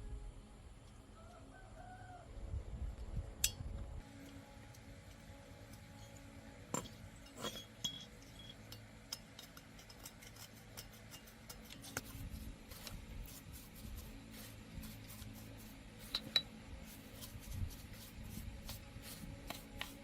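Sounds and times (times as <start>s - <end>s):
faint low hum: 0.0s - 20.0s
light metallic clinks: 5.8s - 11.7s.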